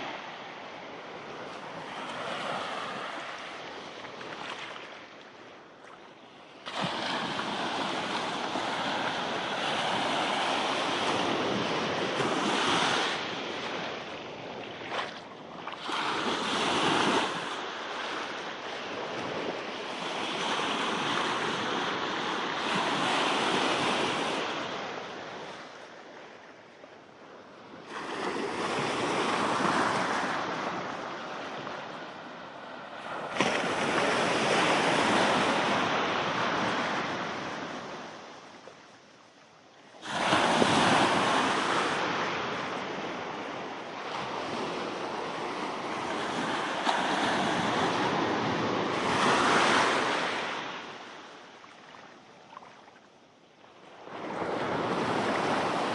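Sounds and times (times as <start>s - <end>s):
surf breaking and washing ashore: 0.0s - 55.9s.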